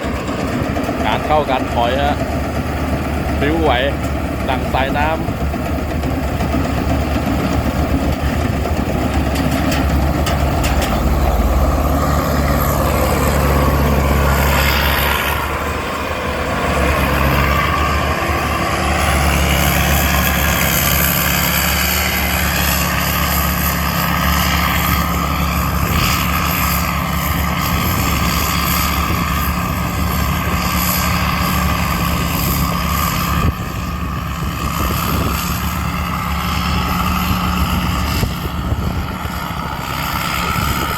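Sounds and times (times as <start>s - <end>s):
high whine of drive: 0.0s - 30.9s
diesel engine running under load: 0.0s - 40.9s.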